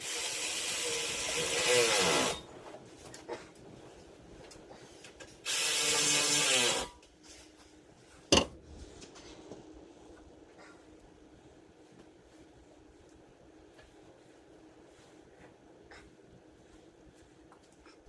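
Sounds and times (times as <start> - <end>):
power ratchet whirring: 5.4 - 6.9.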